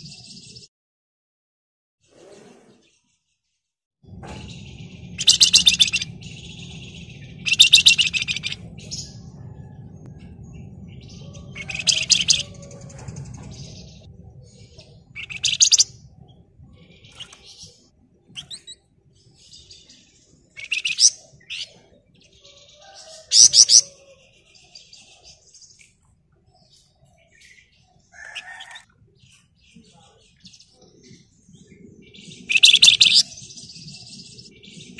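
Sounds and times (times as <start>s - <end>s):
faint low hum: 4.1s - 23.2s
songbird chattering calls: 4.5s - 9.2s, 11.1s - 16.2s, 18.4s - 18.8s, 20.5s - 21.8s, 32.2s - 33.5s.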